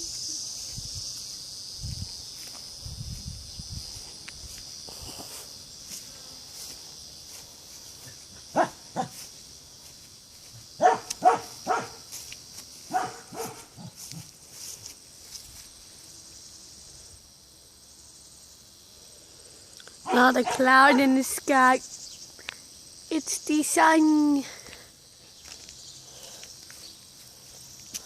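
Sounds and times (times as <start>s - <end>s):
insects chirring: 0.0s - 28.0s
dog barking: 8.6s - 9.1s, 10.8s - 12.0s, 12.9s - 13.7s, 20.0s - 21.0s.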